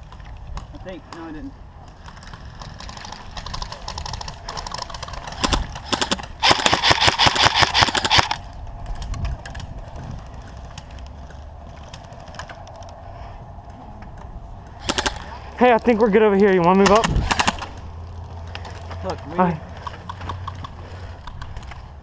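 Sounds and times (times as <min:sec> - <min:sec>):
airsoft rifle firing: 0:02.9 - 0:08.4, 0:14.8 - 0:15.2, 0:16.8 - 0:17.7.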